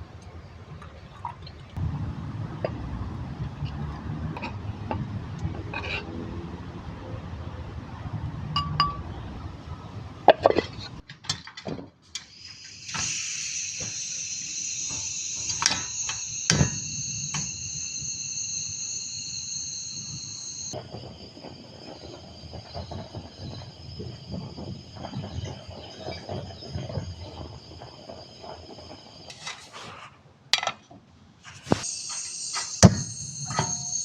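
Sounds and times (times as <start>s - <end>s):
high-pitched trill: 31.8s - 34.0s.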